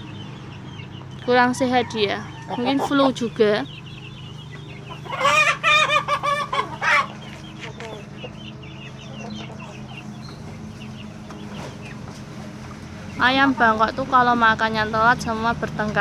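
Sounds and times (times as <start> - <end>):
chickens clucking and cheeping: 0.0 - 16.0
rooster crowing: 1.6 - 3.1.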